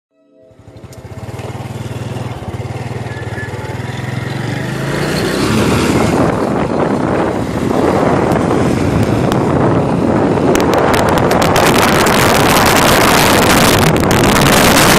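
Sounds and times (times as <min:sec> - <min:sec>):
vehicle engine running: 0:00.5 - 0:04.8
wind buffeting microphone: 0:03.7 - 0:14.9.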